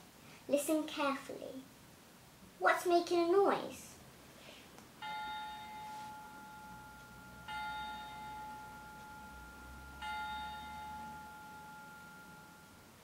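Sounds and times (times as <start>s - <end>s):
bell struck and ringing: 5.0s - 13.0s.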